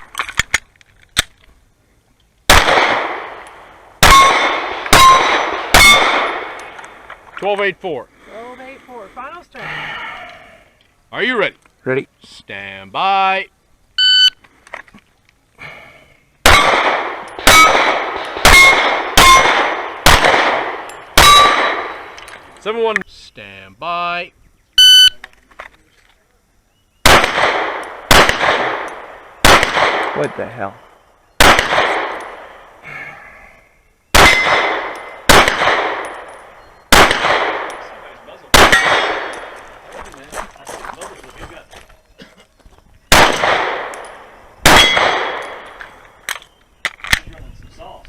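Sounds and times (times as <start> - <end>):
pistol shots: 2.5 - 7.0, 16.4 - 22.4, 27.0 - 30.5, 31.4 - 32.7, 34.1 - 39.8, 43.1 - 46.0
shot timer beep: 14.0 - 14.4, 24.8 - 25.2.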